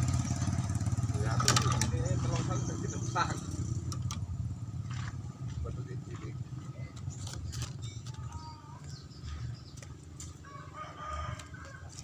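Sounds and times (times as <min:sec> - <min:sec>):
rooster crowing: 0:10.4 - 0:12.0.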